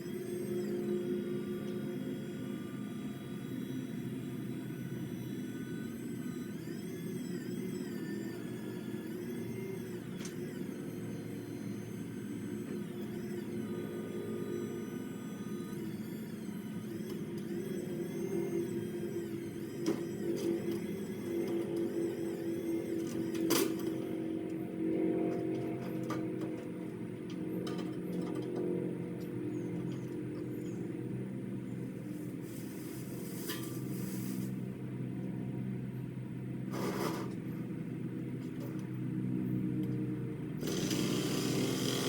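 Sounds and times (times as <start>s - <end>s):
motor running: 40.5s - 42.0s.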